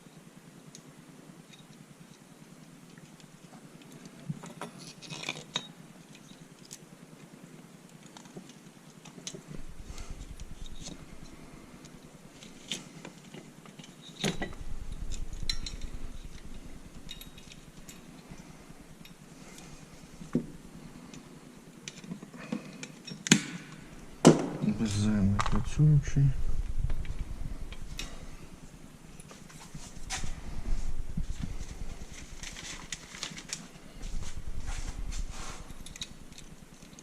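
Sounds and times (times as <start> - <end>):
metal parts and tools clinking: 4.4 - 6.8, 12.4 - 19.6, 35.7 - 37.0
dull low rumbles: 9.5 - 12.3, 14.5 - 19.0, 23.8 - 33.0, 33.8 - 36.3.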